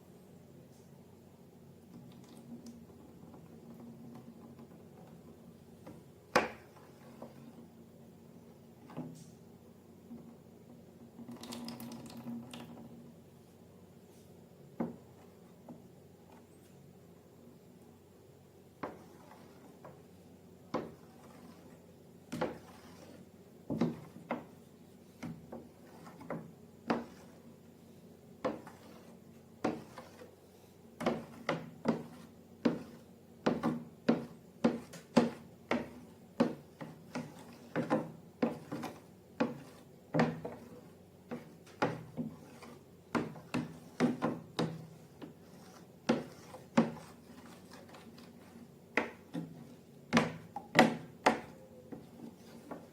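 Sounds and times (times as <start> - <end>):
objects tapping and knocking: 14.8 - 16.5, 20.7 - 24.6, 25.2 - 27.4, 28.4 - 30.4, 31.0 - 52.9.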